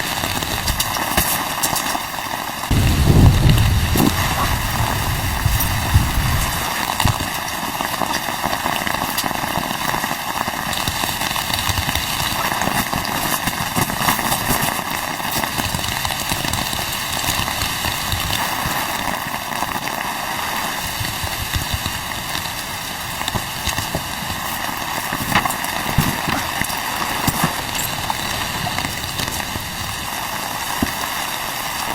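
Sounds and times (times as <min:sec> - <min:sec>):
rain pattering: 0:00.0 - 0:31.9
low rumble: 0:02.7 - 0:06.7.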